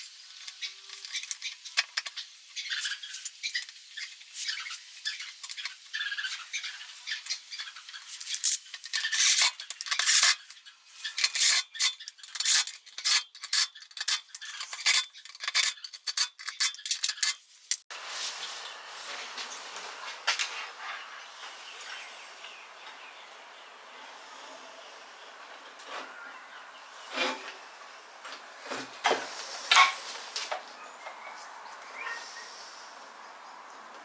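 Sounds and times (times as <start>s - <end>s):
small metal tools clinking: 0.4s - 6.1s, 7.1s - 17.8s
steady hiss: 17.9s - 30.6s.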